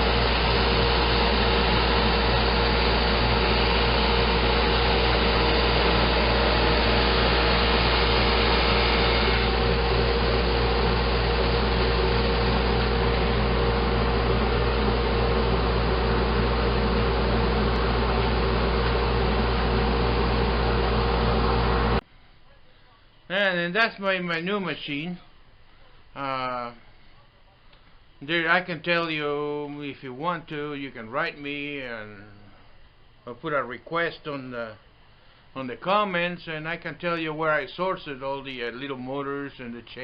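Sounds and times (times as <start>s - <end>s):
drum sander running: 0.0s - 22.0s
low hum: 0.0s - 22.6s.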